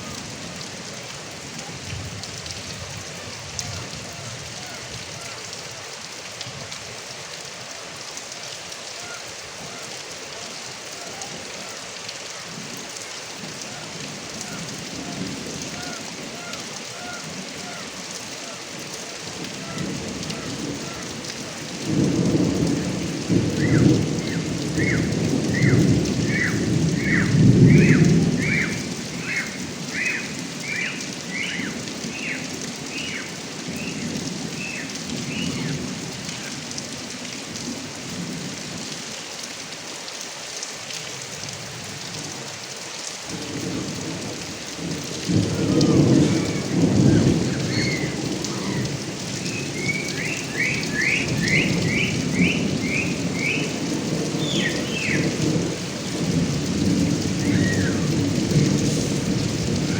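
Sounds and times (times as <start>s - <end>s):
rain pouring off gutter spout: 0.0s - 59.9s
thunder rolling: 21.9s - 29.3s, 45.3s - 59.9s.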